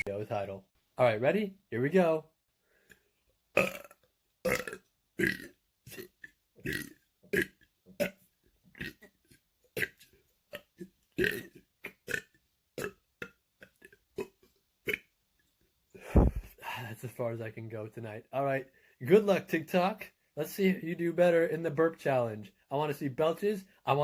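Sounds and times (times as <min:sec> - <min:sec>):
man burping: 0:03.6 - 0:08.2, 0:10.6 - 0:12.9, 0:16.1 - 0:16.5.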